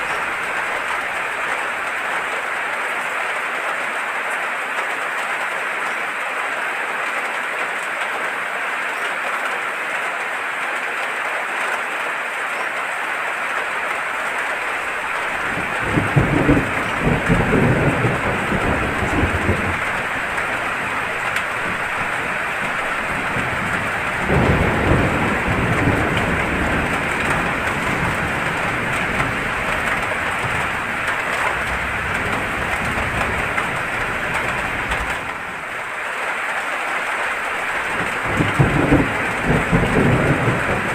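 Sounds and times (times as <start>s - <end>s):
heavy rain hissing: 0.0s - 3.6s, 12.6s - 40.9s
thunder rumbling: 14.4s - 35.9s, 37.3s - 40.9s.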